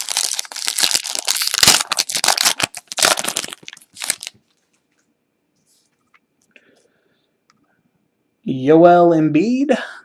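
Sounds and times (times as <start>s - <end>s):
wrapper crinkling and tearing: 0.0s - 4.6s.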